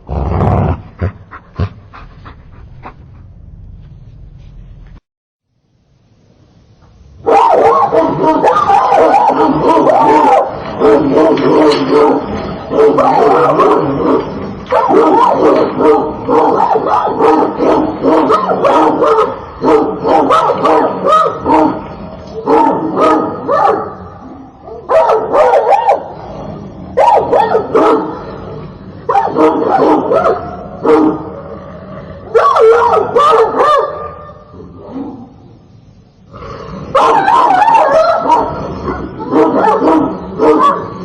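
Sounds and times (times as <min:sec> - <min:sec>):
slowed-down dog barking: 0:07.2 - 0:24.1, 0:24.7 - 0:26.2, 0:26.9 - 0:28.3, 0:32.2 - 0:34.4, 0:36.9 - 0:41.0.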